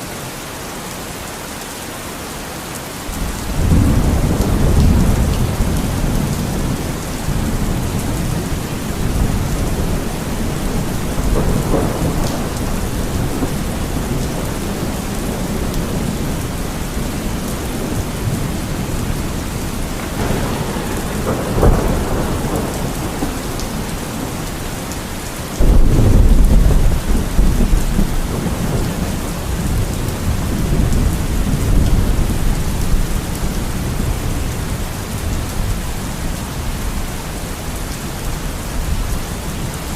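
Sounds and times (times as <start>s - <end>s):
heavy rain: 0.0s - 39.9s
thunder rumbling: 3.1s - 39.9s
loud thunder clap: 3.2s - 19.2s, 19.8s - 24.6s, 25.6s - 33.0s.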